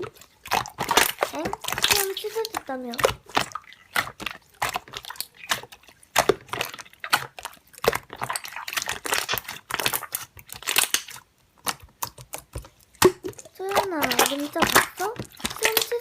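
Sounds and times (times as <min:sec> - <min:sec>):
slime crackling and popping: 0:00.0 - 0:16.0.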